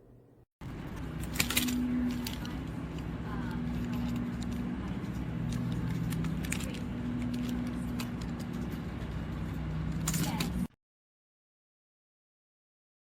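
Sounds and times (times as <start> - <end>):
low mechanical hum: 0.0 - 10.8
handling noises: 0.6 - 10.7.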